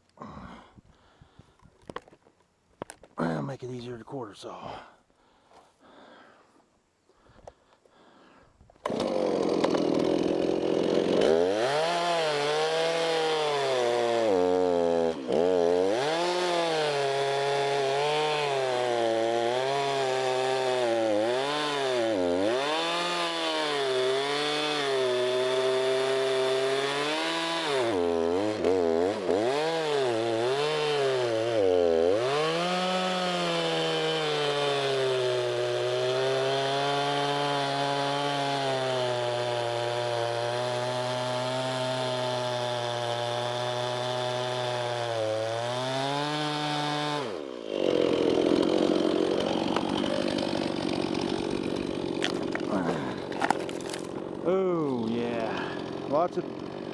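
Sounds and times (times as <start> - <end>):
chainsaw cutting log: 8.7 - 56.9.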